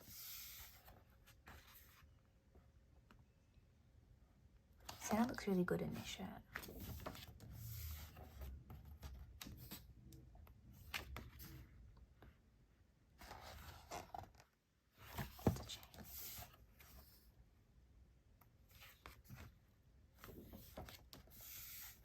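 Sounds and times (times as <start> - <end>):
book pages turning: 0.0 - 2.2, 6.0 - 9.9, 13.2 - 17.3, 20.2 - 22.0.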